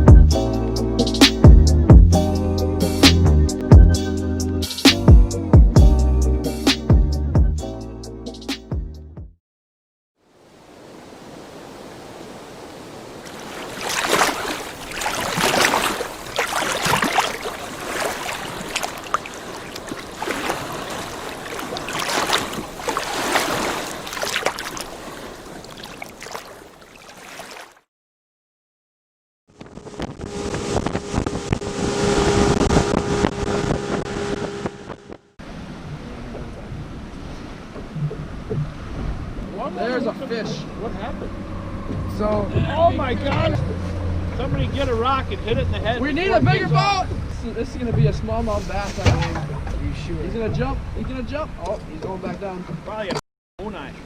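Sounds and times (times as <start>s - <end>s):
water noise: 10.2s - 27.9s, 29.6s - 54.0s
boat motor humming: 13.3s - 27.3s, 29.5s - 47.3s.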